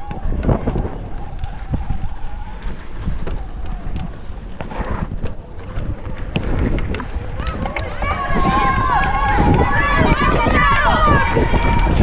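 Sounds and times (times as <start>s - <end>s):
wind buffeting microphone: 0.0s - 12.0s
bike tyres rumbling on rough ground: 0.3s - 11.4s
bike knocks and rattles: 5.5s - 9.9s.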